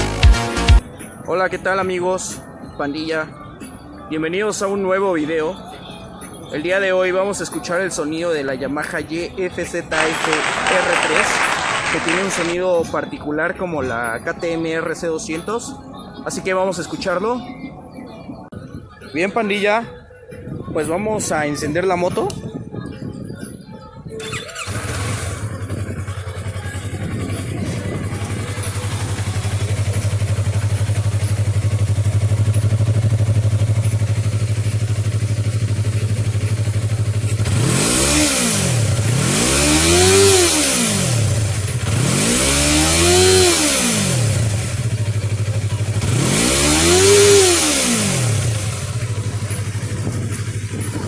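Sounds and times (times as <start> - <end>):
motorcycle engine starting and idling: 9.9 - 12.6, 24.2 - 51.0
engine revving: 10.0 - 12.6, 24.2 - 51.0.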